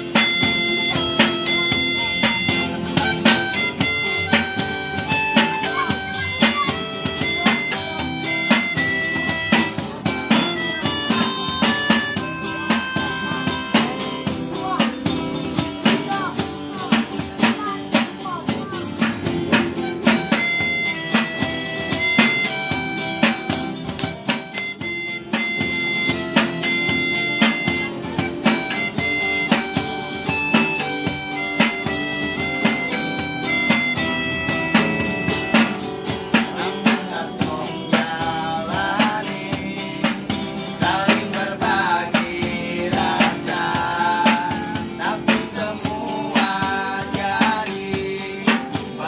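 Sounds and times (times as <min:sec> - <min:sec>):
wavering melody line: 0:00.0 - 0:39.2
drum beat: 0:00.0 - 0:49.0
guitar: 0:00.0 - 0:49.0
held instrument tones: 0:00.0 - 0:49.0.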